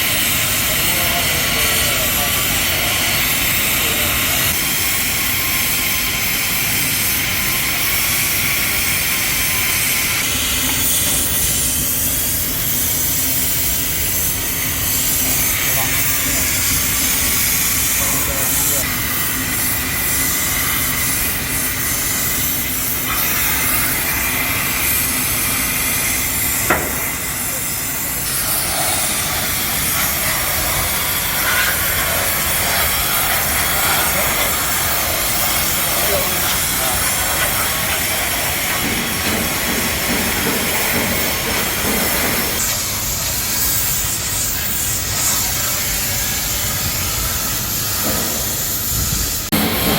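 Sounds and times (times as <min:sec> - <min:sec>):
compressed air hissing: 0:00.0 - 0:49.9.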